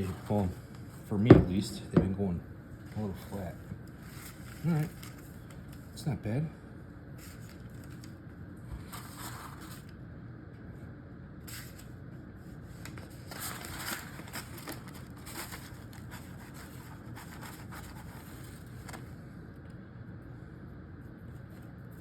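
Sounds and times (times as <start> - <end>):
low background hum: 0.0 - 22.0
scraping and rustling: 8.7 - 9.9, 12.6 - 19.2.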